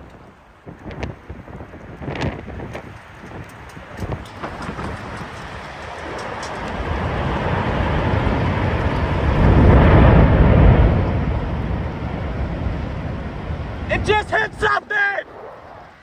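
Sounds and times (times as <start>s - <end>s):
storm wind buffeting microphone: 0.0s - 16.0s.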